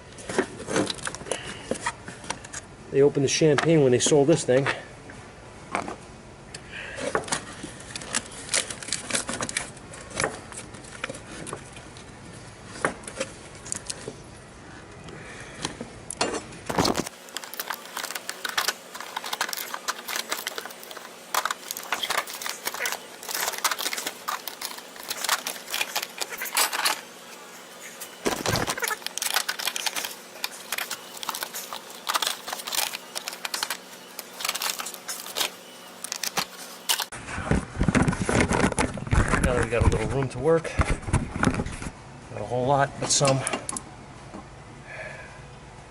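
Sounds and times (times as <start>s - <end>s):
tools and metal parts clattering: 16.2s - 27.1s.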